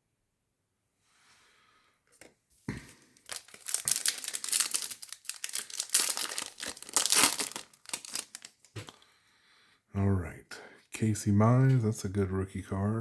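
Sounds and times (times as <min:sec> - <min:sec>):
foil wrapper crinkling and tearing: 0:03.2 - 0:09.0.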